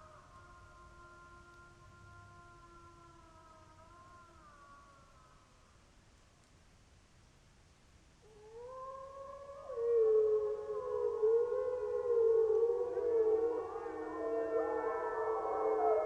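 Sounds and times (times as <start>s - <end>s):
wolves howling in chorus: 8.3s - 16.0s.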